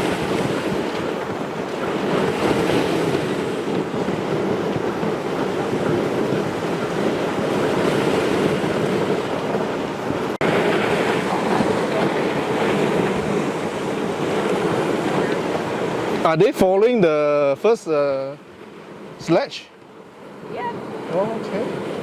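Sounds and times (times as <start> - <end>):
sled runners sliding over snow: 0.0 - 16.4
wind on microphone: 0.0 - 17.0.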